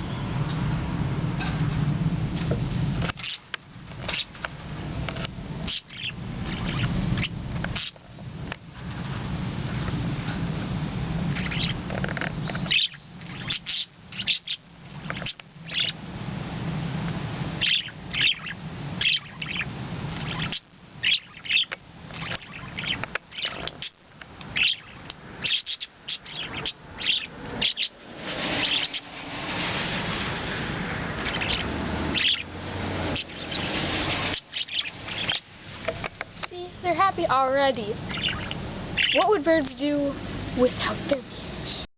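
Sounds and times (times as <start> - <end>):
parakeets chirping: 3.0 - 9.9, 11.2 - 16.1, 17.4 - 41.9.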